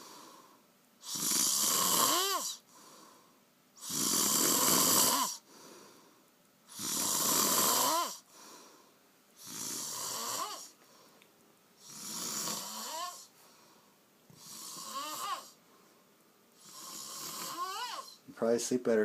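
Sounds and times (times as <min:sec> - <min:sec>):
man snoring heavily: 0:01.0 - 0:02.6, 0:03.8 - 0:05.5, 0:06.7 - 0:08.3, 0:09.4 - 0:10.8, 0:11.8 - 0:13.3, 0:14.4 - 0:15.6, 0:16.6 - 0:18.2.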